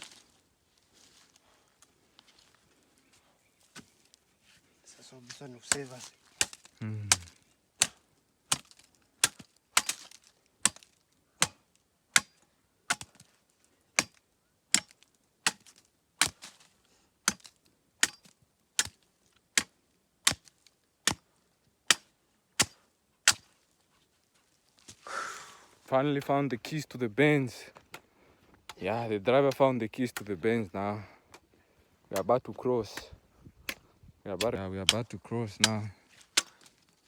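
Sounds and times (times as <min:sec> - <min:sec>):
blade chopping wood: 0:05.6 - 0:11.6, 0:12.2 - 0:13.3, 0:14.0 - 0:16.6, 0:17.2 - 0:21.2, 0:21.9 - 0:23.5.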